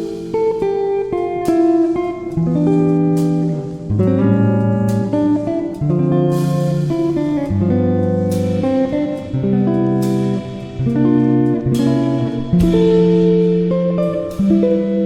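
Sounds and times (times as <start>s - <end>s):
guitar music: 0.0s - 15.0s
crash cymbal accents: 11.5s - 13.8s.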